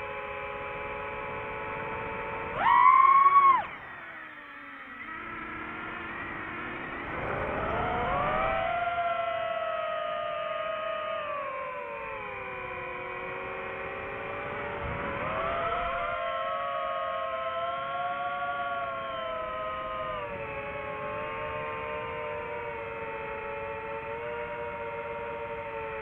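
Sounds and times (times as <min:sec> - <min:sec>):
drone motors whining: 0:00.0 - 0:26.0.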